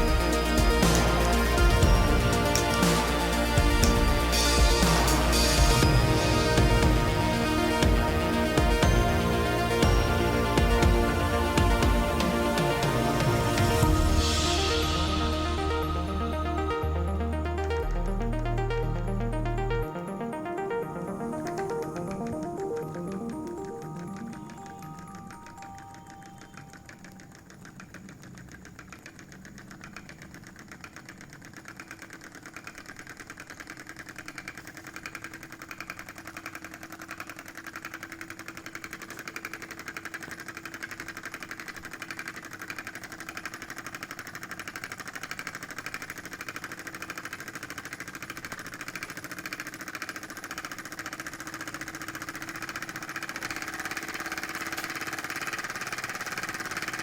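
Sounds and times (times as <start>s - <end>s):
small engine mechanical clatter: 21.7s - 57.0s.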